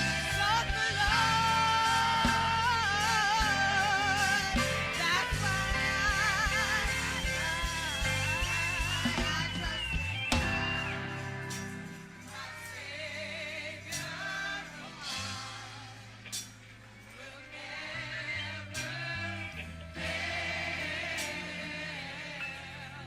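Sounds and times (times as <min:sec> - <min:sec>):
drum and cymbal hits: 0:00.0 - 0:12.7
bass line: 0:00.0 - 0:23.0
gospel choir singing: 0:00.0 - 0:23.0.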